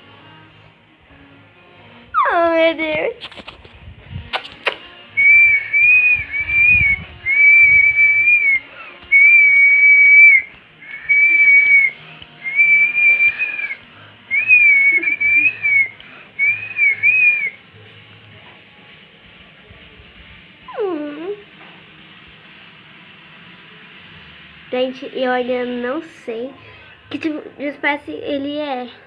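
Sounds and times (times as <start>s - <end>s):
person whistling: 4.4s - 17.6s.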